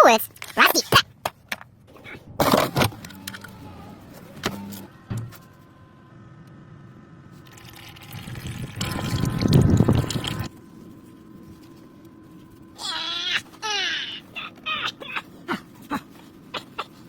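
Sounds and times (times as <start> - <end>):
liquid pouring and splashing: 7.4 - 10.5.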